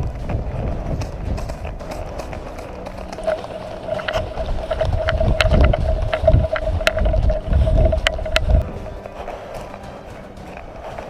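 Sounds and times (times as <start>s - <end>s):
running footsteps in snow: 0.0s - 11.0s
wind buffeting microphone: 0.0s - 11.0s
gear clicking: 0.9s - 11.0s
steady mid-pitched hum: 2.7s - 10.1s.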